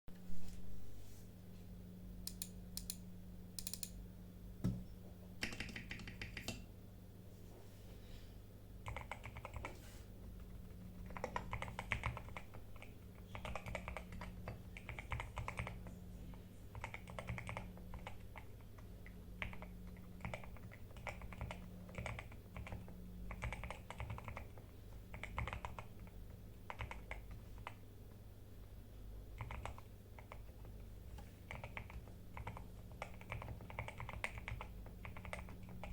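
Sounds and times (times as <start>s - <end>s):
mechanical keyboard typing: 3.6s - 3.9s, 5.4s - 6.5s, 8.8s - 9.7s, 10.4s - 15.8s, 16.7s - 18.8s, 19.4s - 26.1s, 26.7s - 27.8s, 29.4s - 30.8s, 31.5s - 35.9s.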